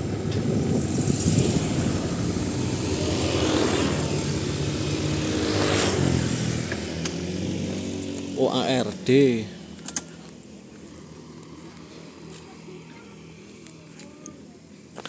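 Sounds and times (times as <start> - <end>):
street noise: 0.0 - 15.0.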